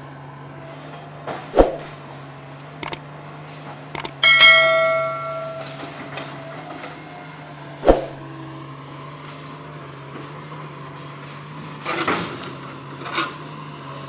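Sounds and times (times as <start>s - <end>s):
metal struck ringing: 4.1s - 6.0s.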